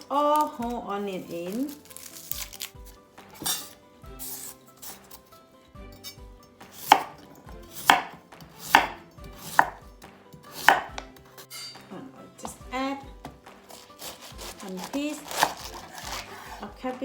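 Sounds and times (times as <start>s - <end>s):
knife chopping on cutting board: 6.6s - 11.2s, 13.2s - 16.6s.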